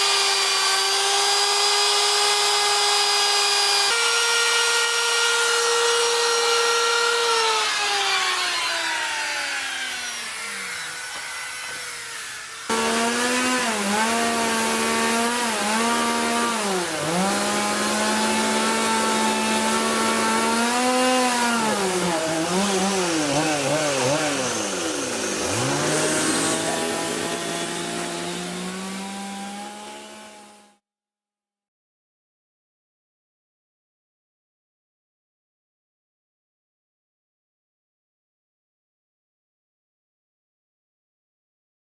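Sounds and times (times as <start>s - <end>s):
chainsaw cutting wood: 0.0s - 30.8s.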